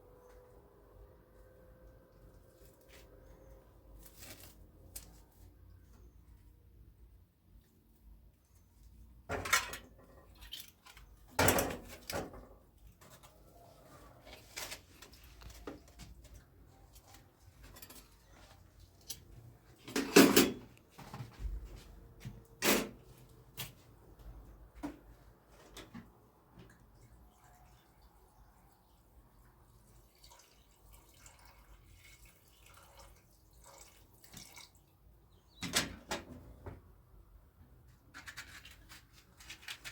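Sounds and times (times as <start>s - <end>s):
objects knocking and clattering: 9.2s - 10.4s, 11.3s - 13.3s, 19.8s - 21.3s.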